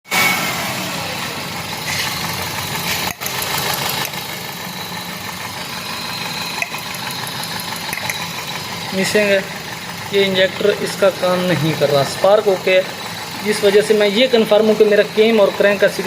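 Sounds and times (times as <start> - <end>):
car engine idling with misfire: 0.1 - 16.0.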